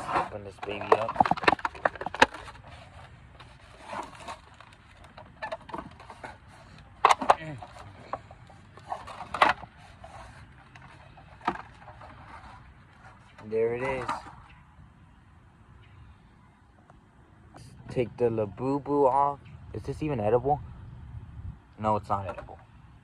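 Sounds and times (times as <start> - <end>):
packaging clicking and crinkling: 0.6 - 14.4.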